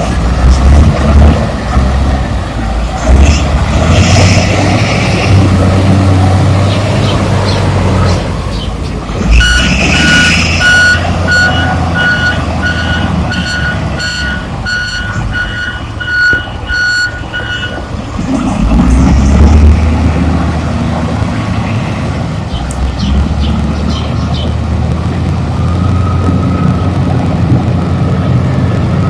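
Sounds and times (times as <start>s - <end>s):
diesel engine running: 0.0s - 29.0s
reversing alarm beeping: 9.3s - 17.9s.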